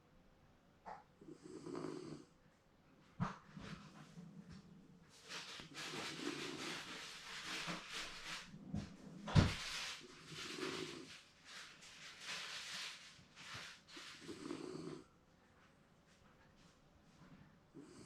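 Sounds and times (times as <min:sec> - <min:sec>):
dog snoring: 0:01.2 - 0:02.3, 0:05.9 - 0:07.1, 0:10.2 - 0:11.2, 0:14.0 - 0:15.1, 0:17.8 - 0:18.0.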